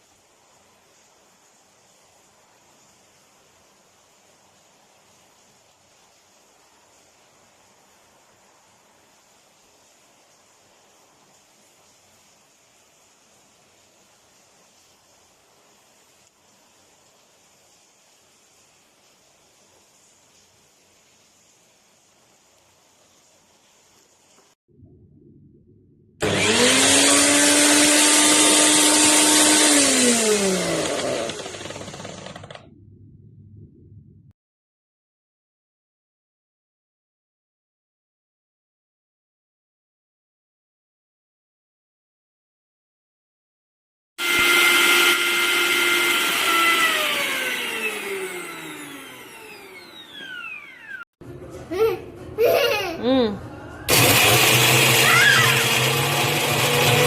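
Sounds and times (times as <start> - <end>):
mixer grinder motor running: 26.2 - 32.6, 44.2 - 51.0, 53.9 - 57.0
motor winding down whine: 26.2 - 32.7, 44.2 - 51.0, 53.9 - 57.0.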